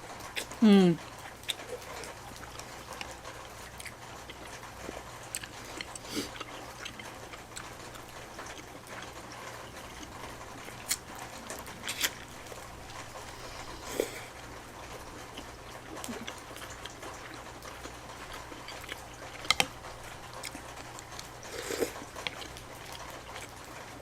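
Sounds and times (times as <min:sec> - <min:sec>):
wet eating clicks and smacks: 0:00.1 - 0:13.6, 0:14.3 - 0:24.0.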